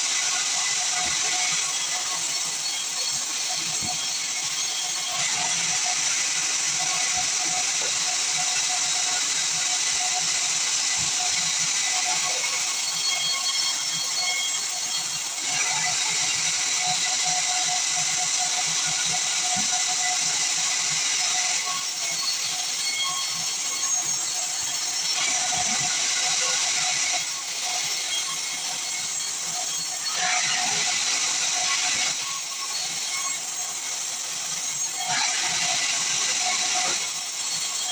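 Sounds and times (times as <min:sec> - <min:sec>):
bandsaw cutting through log: 0:00.0 - 0:37.9.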